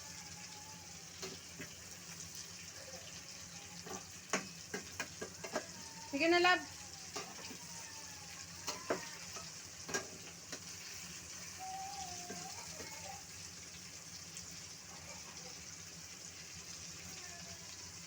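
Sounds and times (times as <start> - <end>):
chicken frying in oil: 0.0 - 18.0
utensil clicking against pan: 3.8 - 5.8, 8.6 - 10.7.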